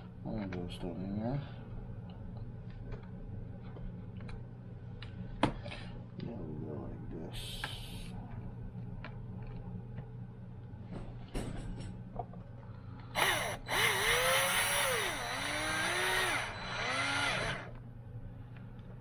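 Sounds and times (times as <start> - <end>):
cordless drill driving screw: 13.2 - 17.7.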